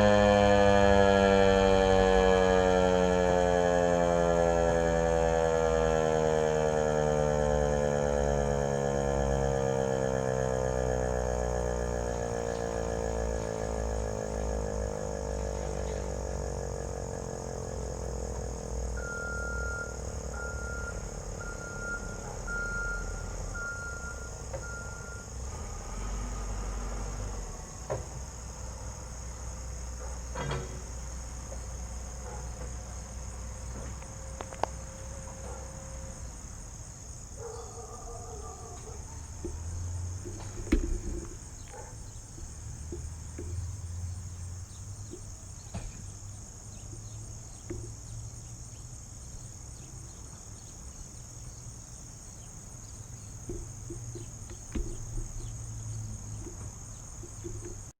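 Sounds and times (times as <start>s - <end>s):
siren winding down: 0.0s - 27.3s
insects droning: 0.0s - 57.9s
sharp knocks: 39.4s - 43.8s, 53.4s - 57.9s.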